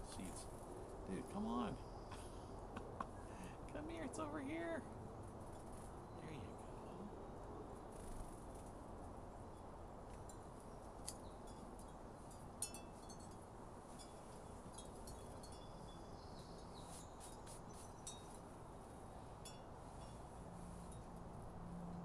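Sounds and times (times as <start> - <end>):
outdoor background hiss: 0.0 - 22.0
wind chimes tinkling: 11.4 - 16.7.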